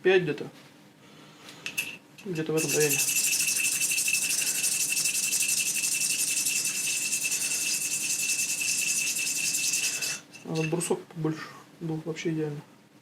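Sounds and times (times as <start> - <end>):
metal grinding with high whine: 1.7 - 10.9.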